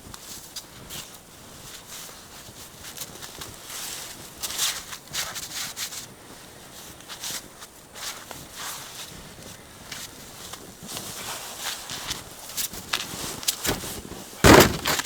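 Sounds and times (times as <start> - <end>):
footsteps crunching in snow: 11.0 - 15.0.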